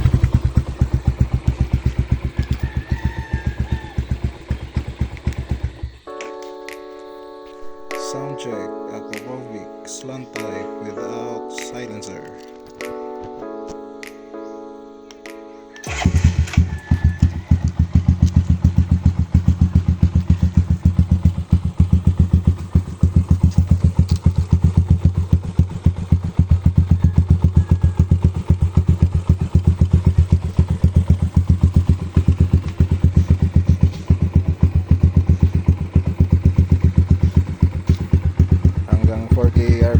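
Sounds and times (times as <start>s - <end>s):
motorcycle engine idling: 0.0s - 6.1s, 15.8s - 39.9s.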